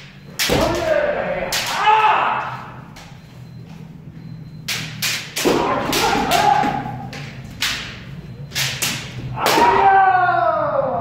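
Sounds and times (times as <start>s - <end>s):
bamboo swords striking: 0.4s - 2.4s, 4.7s - 10.0s
people shouting: 0.5s - 2.9s, 5.4s - 7.2s, 9.3s - 11.0s.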